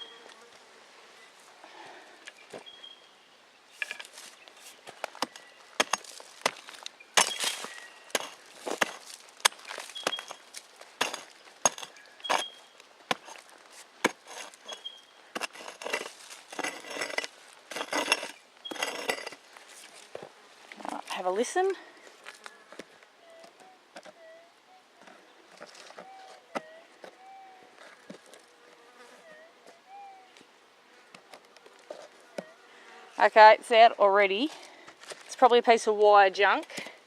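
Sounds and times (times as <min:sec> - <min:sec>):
digging tool scraping gravel: 0:03.8 - 0:22.5, 0:25.5 - 0:27.2.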